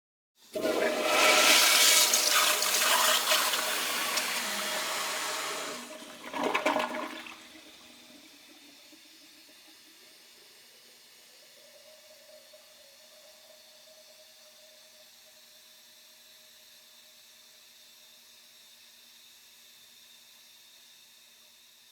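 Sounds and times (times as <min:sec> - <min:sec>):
toilet flushing: 0:00.4 - 0:14.9
toilet gurgling gulp: 0:00.5 - 0:13.7.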